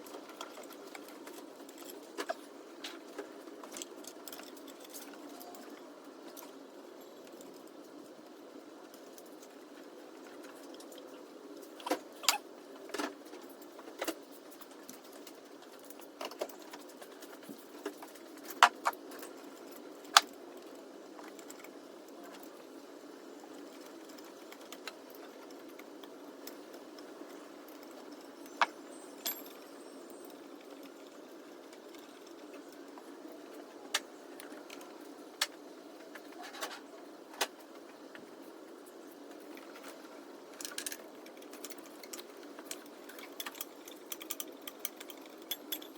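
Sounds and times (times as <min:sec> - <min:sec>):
low background noise: 0:00.0 - 0:45.9.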